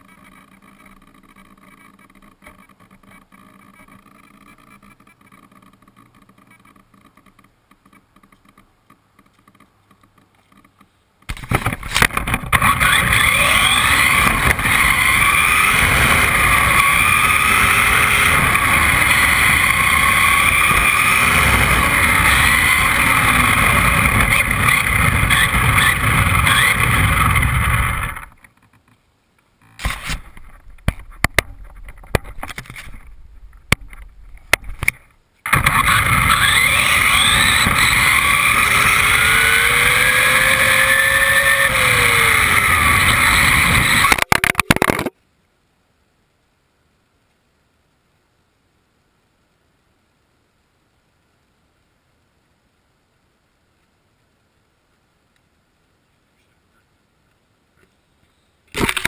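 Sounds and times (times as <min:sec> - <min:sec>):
faint steady hum: 0:00.0 - 0:59.0
toy truck rattling: 0:11.4 - 0:28.6, 0:35.5 - 0:45.1
electric motor whine: 0:11.9 - 0:28.3, 0:35.5 - 0:44.3.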